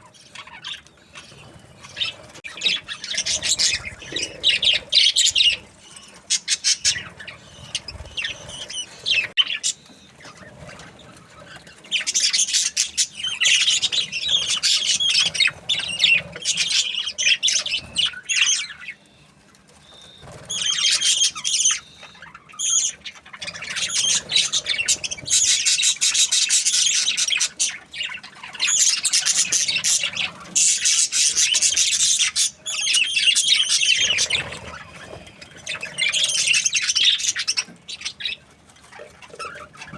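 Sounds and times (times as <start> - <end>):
budgerigars chirping and warbling: 0.0 - 39.9.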